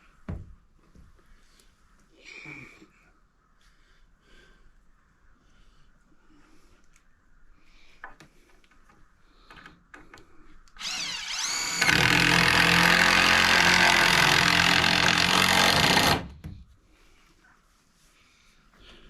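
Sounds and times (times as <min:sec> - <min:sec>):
power tool whining under load: 0:10.8 - 0:16.3.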